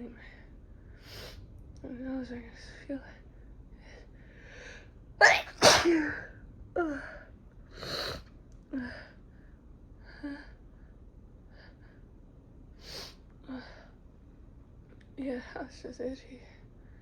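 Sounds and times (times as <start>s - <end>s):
soft breathing: 2.6s - 5.0s
woman sneezing: 5.2s - 6.3s.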